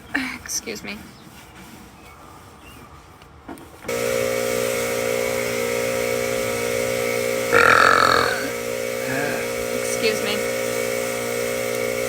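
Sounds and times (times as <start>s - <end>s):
appliance motor humming: 3.9s - 12.0s
loud burp: 7.5s - 8.5s.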